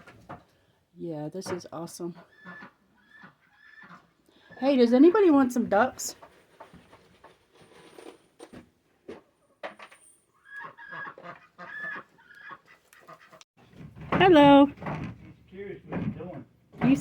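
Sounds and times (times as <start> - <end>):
poultry calling: 2.2 - 4.6, 10.4 - 13.4.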